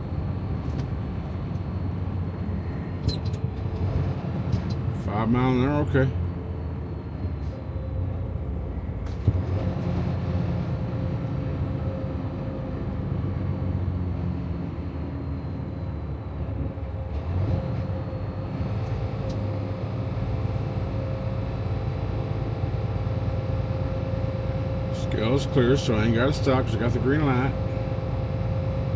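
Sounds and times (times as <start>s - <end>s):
diesel truck engine droning: 0.0s - 28.9s.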